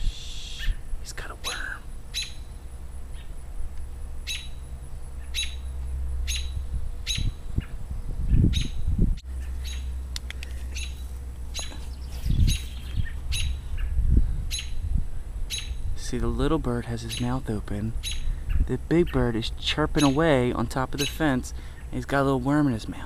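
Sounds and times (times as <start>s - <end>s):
bird chirping: 0.0s - 3.4s, 4.2s - 14.9s, 15.5s - 15.9s, 17.0s - 17.4s, 18.0s - 19.2s, 20.0s - 20.4s.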